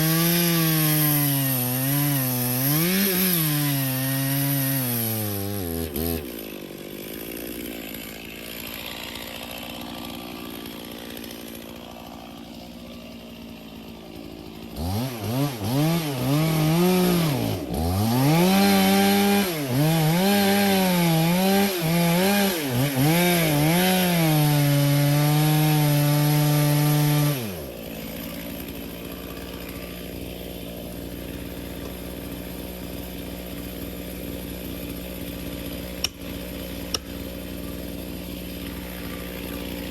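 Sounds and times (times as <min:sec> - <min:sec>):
chainsaw idling and revving: 0:00.0 - 0:39.9.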